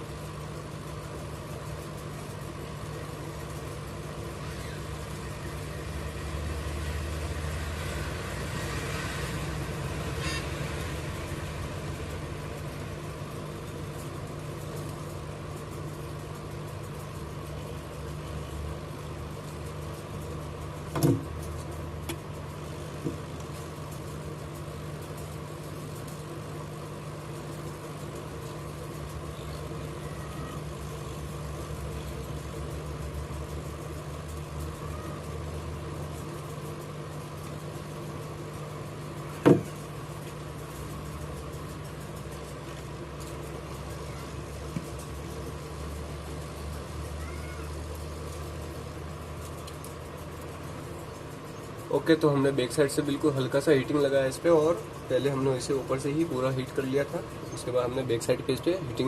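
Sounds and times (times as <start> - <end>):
hot air station blowing: 6.6 - 13.2.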